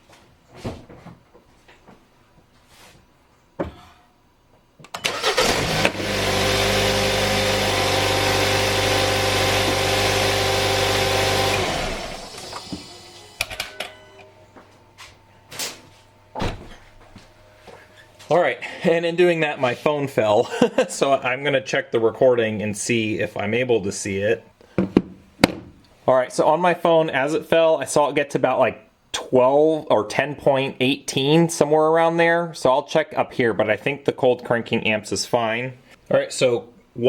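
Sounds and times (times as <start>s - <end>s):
car engine cranking and running: 5.0s - 12.9s.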